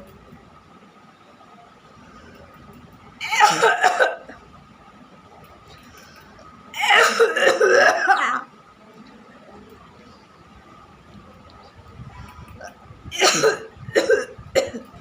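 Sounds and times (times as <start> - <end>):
person coughing: 3.2 - 4.3, 6.8 - 8.4, 13.2 - 14.9.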